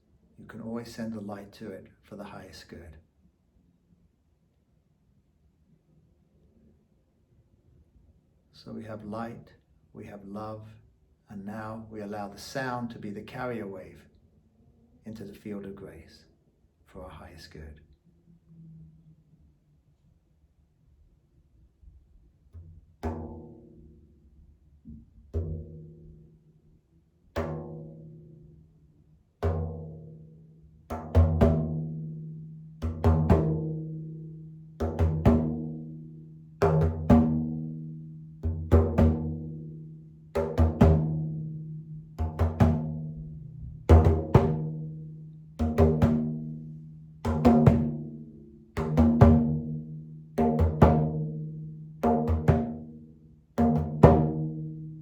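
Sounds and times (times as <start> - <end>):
frame drum beating: 30.9 - 53.0, 53.6 - 55.0.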